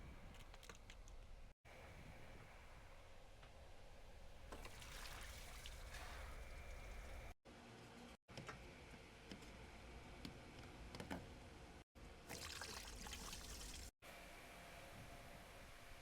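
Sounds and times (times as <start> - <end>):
faint liquid pouring and trickling: 4.5 - 7.3, 12.3 - 13.9.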